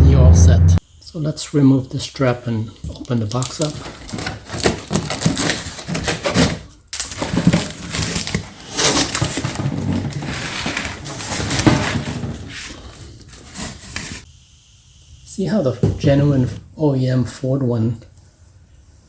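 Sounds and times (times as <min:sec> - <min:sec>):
cardboard and wrapping rustling: 0:02.9 - 0:14.2.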